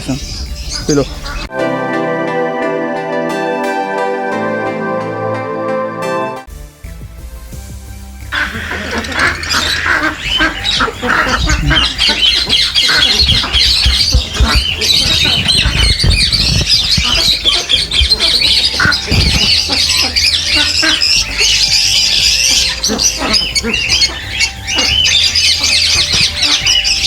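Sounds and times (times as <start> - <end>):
caged birds chirping and squawking: 0.0 - 1.5, 8.3 - 27.0.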